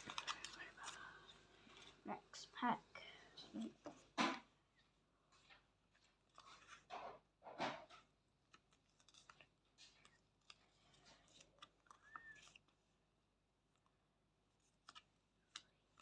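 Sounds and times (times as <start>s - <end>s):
light clicks of cards handled: 0.0s - 2.0s, 14.6s - 16.0s.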